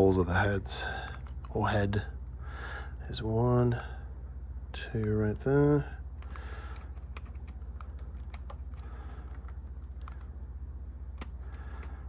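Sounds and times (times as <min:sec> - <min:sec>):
steady low hum: 0:00.0 - 0:12.0
clicks from tape mechanism: 0:04.8 - 0:10.4, 0:11.0 - 0:12.0.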